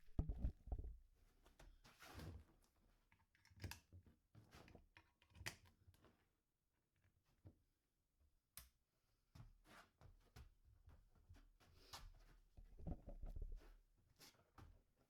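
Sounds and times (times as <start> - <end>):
faint clicks and taps: 0.0 - 1.0, 12.6 - 13.6.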